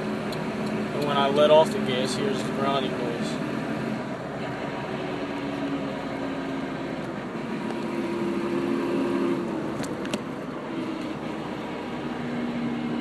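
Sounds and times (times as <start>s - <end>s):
drivetrain and road noise: 0.0s - 13.0s
vehicle grinding in gear: 0.0s - 13.0s.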